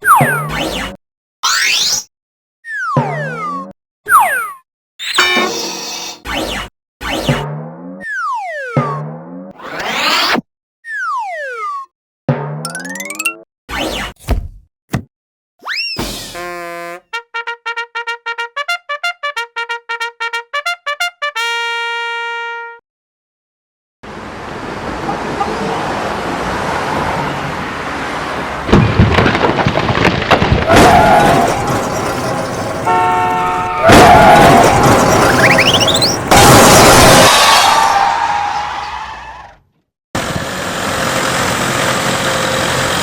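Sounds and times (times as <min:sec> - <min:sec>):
horn-like honk: 0:16.4 - 0:22.8, 0:32.9 - 0:35.6.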